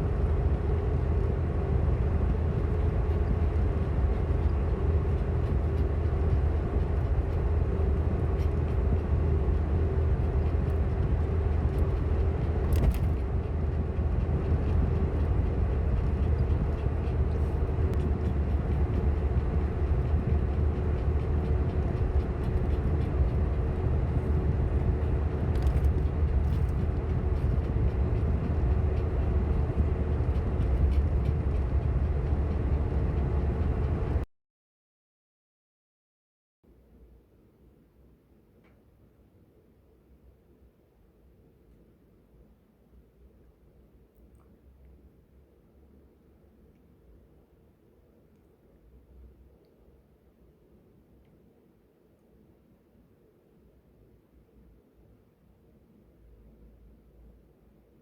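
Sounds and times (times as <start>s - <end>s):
car cabin drone: 0.0s - 34.3s.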